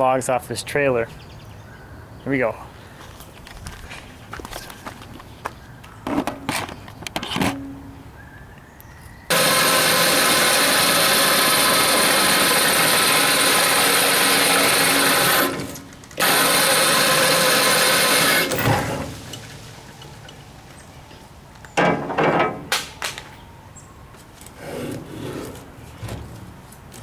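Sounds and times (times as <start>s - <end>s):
electric winch motor running: 9.3s - 20.3s.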